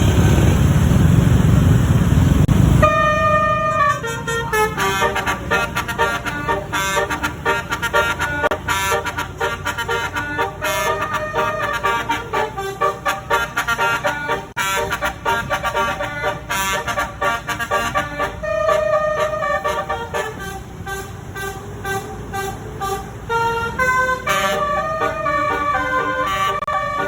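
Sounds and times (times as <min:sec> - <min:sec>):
loud rushing noise: 0:00.0 - 0:10.0
bus musical air horn tune: 0:02.8 - 0:27.0.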